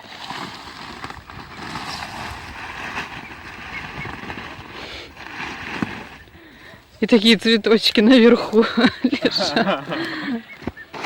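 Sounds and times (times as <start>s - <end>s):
steady rustling: 0.0s - 11.0s
wind buffeting microphone: 1.0s - 9.0s.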